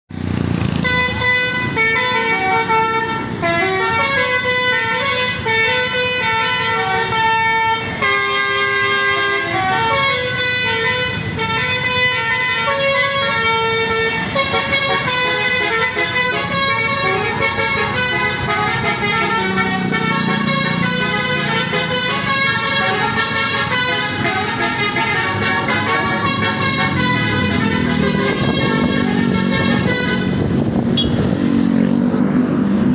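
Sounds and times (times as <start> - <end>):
multi-tone bus horn playing tune: 0.5 - 31.8.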